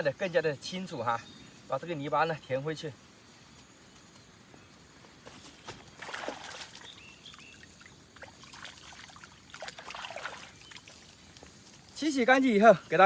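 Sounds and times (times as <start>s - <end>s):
water splashing and trickling: 5.6s - 13.0s.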